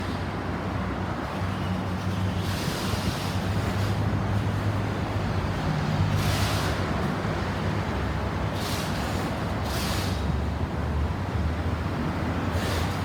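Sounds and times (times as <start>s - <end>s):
tyres hissing on wet road: 5.6s - 10.6s, 12.2s - 13.0s.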